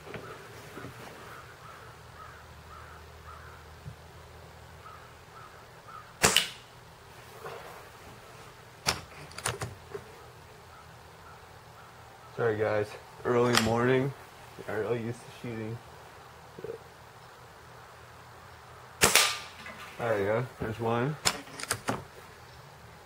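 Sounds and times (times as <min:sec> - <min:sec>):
air rifle firing: 0:06.2 - 0:06.7, 0:19.0 - 0:19.6.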